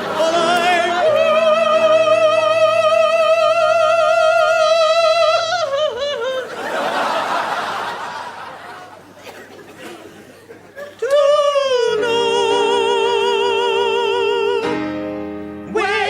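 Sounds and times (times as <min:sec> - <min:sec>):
audience laughter: 0:00.0 - 0:01.5, 0:05.6 - 0:11.1
falsetto operatic singing: 0:00.0 - 0:06.6, 0:11.0 - 0:14.8, 0:15.6 - 0:16.0.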